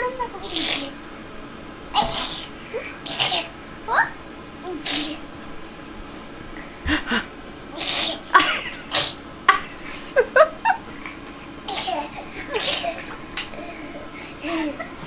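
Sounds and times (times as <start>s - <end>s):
laughter: 8.3s - 11.0s.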